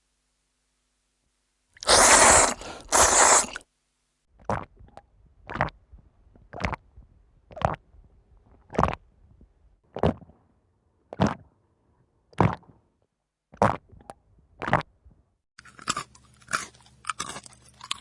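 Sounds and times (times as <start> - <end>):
person biting food: 1.8 - 3.6
person chewing: 15.6 - 18.0.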